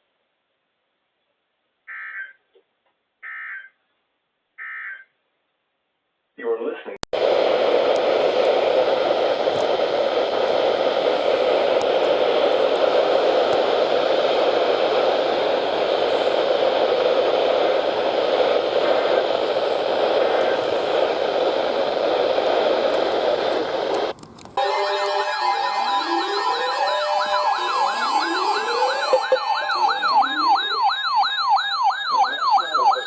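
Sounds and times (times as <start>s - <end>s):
radio static hiss: 7.2s - 33.0s.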